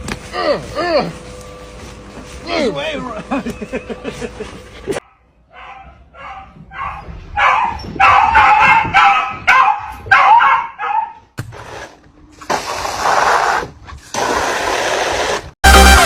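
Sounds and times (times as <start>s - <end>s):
dog barking and yipping: 5.0s - 11.2s.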